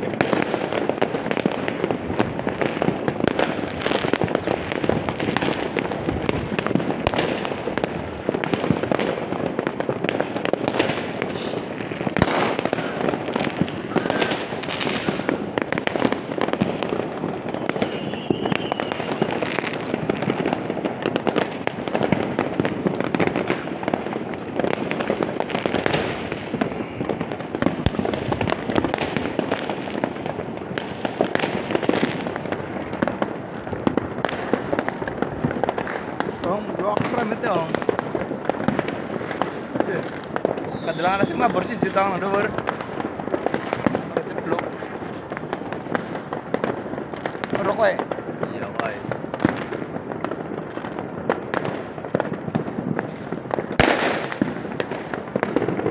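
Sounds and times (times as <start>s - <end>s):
firecrackers popping and crackling: 0.0s - 55.9s.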